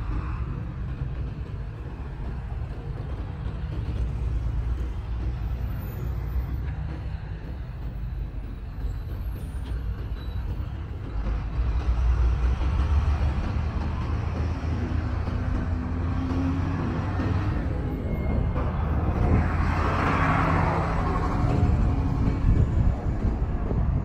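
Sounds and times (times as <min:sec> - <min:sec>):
traffic rumble: 0:00.0 - 0:24.0
heavy vehicle passing: 0:11.4 - 0:24.0.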